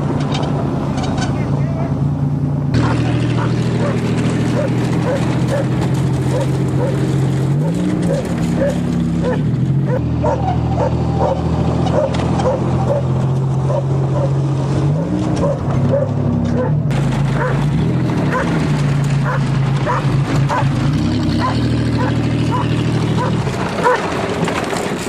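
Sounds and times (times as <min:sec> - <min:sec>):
car engine running and revving: 0:00.0 - 0:25.0
dog barking: 0:02.8 - 0:07.0, 0:07.6 - 0:13.1, 0:13.7 - 0:14.4, 0:15.0 - 0:16.8, 0:17.4 - 0:17.6, 0:18.3 - 0:18.6, 0:19.2 - 0:20.7, 0:21.4 - 0:24.1.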